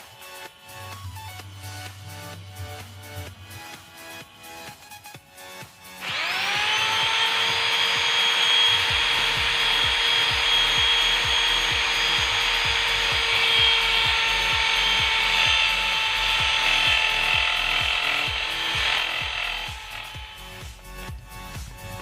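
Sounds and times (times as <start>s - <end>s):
electric drill drilling into metal: 5.8s - 21.1s.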